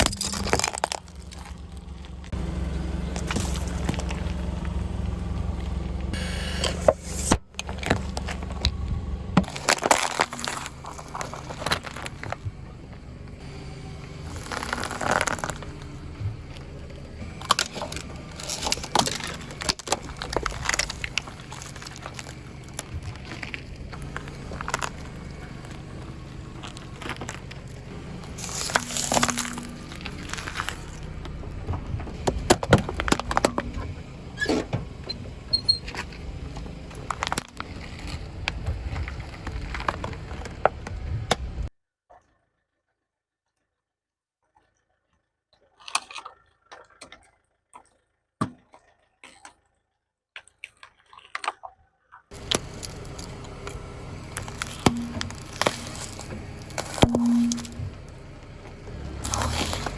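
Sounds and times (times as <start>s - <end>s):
car engine running low: 0.0s - 41.7s, 52.3s - 59.9s
car tyre crushing objects: 0.0s - 41.7s, 52.3s - 59.9s.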